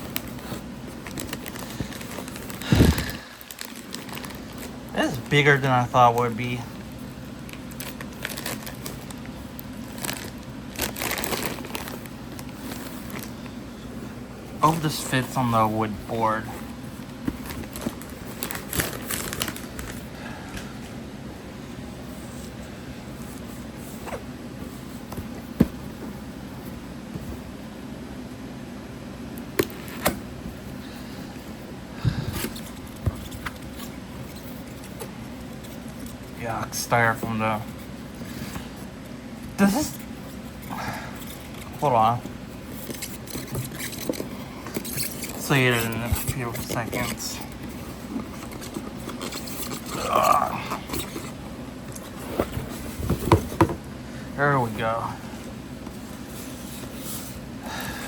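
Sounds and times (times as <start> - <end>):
packaging rustling and crinkling: 0.0 - 13.6, 14.6 - 20.2, 29.6 - 30.2, 32.2 - 38.8, 41.2 - 53.8
steady low hum: 0.0 - 58.0.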